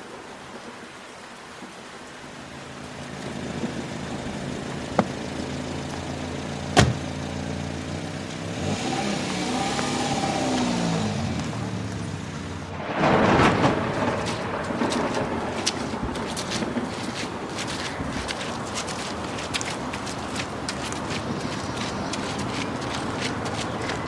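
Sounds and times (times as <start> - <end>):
car engine running: 2.4 - 12.8
loud rush of noise: 8.7 - 18.1.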